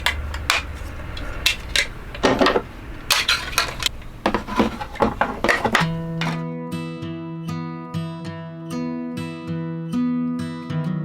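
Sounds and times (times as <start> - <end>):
dishes and cutlery clattering: 0.0 - 6.4
acoustic guitar music: 0.0 - 11.0.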